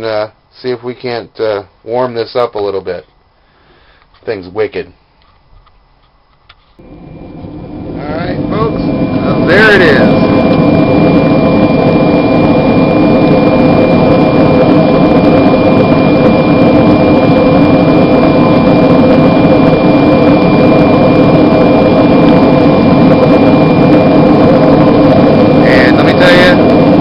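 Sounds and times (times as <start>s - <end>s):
forge burner roaring: 6.8s - 27.0s.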